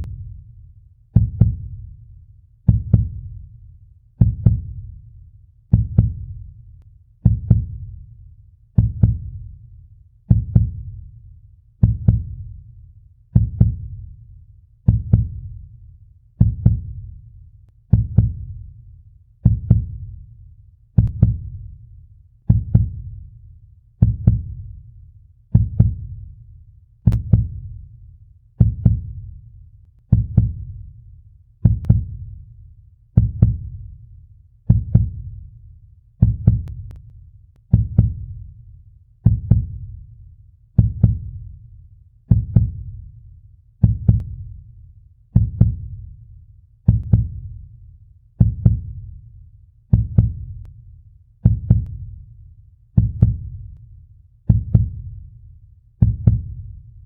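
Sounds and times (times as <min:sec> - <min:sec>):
slow heartbeat thumps: 0:01.1 - 0:02.0, 0:02.7 - 0:03.5, 0:04.2 - 0:05.0, 0:05.7 - 0:06.6, 0:07.2 - 0:08.2, 0:08.8 - 0:09.6, 0:10.3 - 0:11.1, 0:11.8 - 0:12.6, 0:13.3 - 0:14.2, 0:14.8 - 0:15.8, 0:16.4 - 0:17.2, 0:17.8 - 0:18.8, 0:19.4 - 0:20.3, 0:21.0 - 0:21.8, 0:22.5 - 0:23.4, 0:24.0 - 0:24.8, 0:25.5 - 0:26.4, 0:27.0 - 0:28.0, 0:28.6 - 0:32.6, 0:33.2 - 0:34.0, 0:34.7 - 0:35.6, 0:36.2 - 0:37.1, 0:37.7 - 0:38.6, 0:39.2 - 0:40.2, 0:40.8 - 0:41.7, 0:42.3 - 0:43.2, 0:43.8 - 0:44.7, 0:45.3 - 0:46.2, 0:46.9 - 0:47.8, 0:48.4 - 0:50.8, 0:51.4 - 0:52.4, 0:53.0 - 0:53.8, 0:54.5 - 0:55.4, 0:56.0 - 0:57.0.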